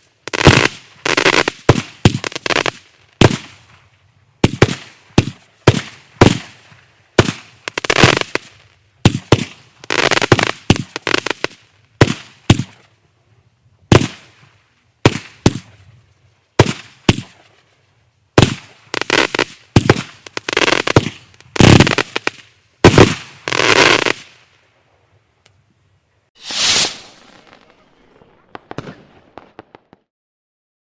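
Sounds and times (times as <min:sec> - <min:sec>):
crackling firework stars: 0:00.0 - 0:30.1
firework reports: 0:26.4 - 0:30.1.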